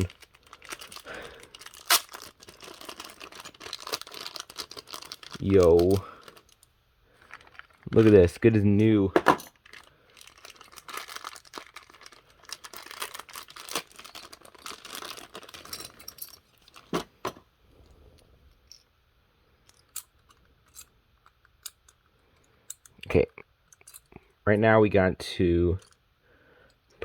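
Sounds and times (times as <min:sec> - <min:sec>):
packaging rustling with clicks: 0:00.0 - 0:17.3.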